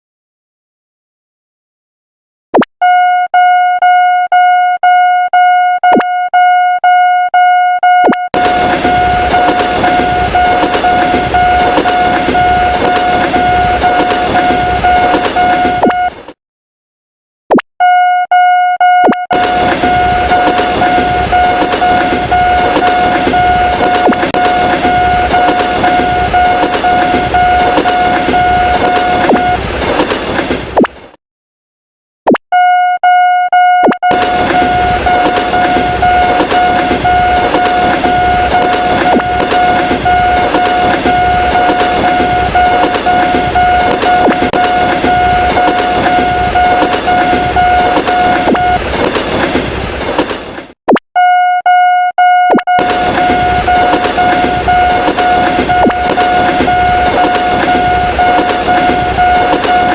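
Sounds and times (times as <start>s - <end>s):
railroad crossing bell ringing: 8.4s - 16.1s, 19.3s - 29.6s, 34.1s - 48.8s, 52.8s - 59.9s
train passing with wheel clatter: 8.4s - 16.4s, 19.4s - 30.8s, 34.1s - 50.7s, 52.8s - 59.9s.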